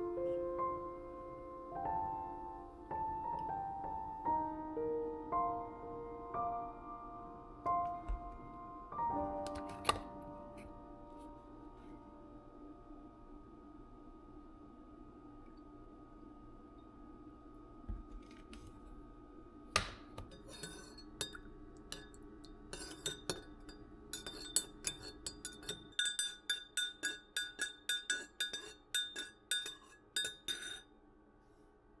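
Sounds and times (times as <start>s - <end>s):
low hum: 0.0s - 20.2s
glassware clinking: 20.3s - 30.9s.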